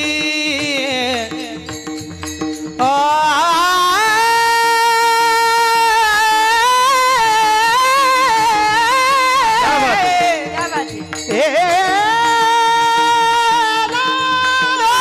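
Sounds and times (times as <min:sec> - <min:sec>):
harmonium drone: 0:00.0 - 0:15.0
woman singing wordless melody: 0:10.3 - 0:11.3.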